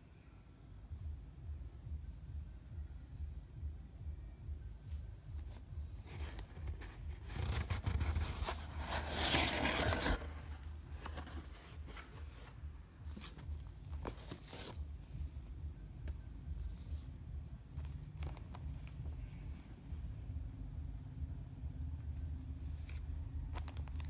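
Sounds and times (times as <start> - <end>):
packaging rustling and tearing: 6.1 - 12.5.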